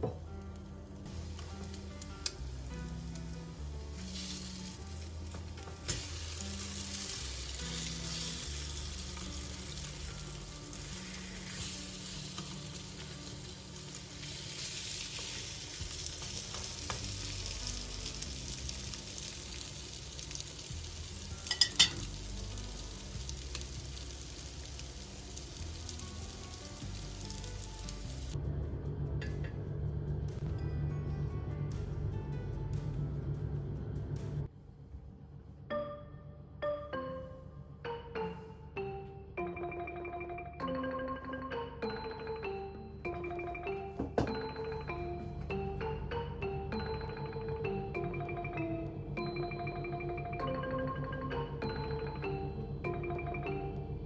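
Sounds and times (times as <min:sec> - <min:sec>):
food sizzling in a pan: 0:01.1 - 0:28.4
utensil clinking against pan: 0:21.5 - 0:22.1.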